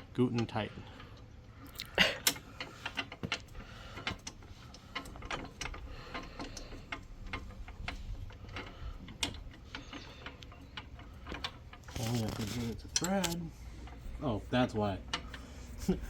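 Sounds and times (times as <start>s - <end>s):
metal clicks and knocks: 2.2s - 14.1s.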